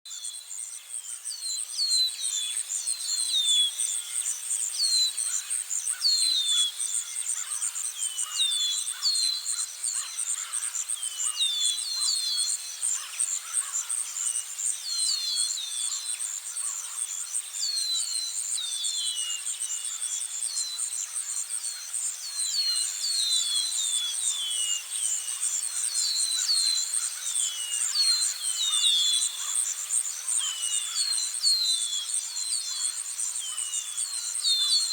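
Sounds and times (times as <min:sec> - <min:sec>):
insects trilling: 0:18.2 - 0:34.9.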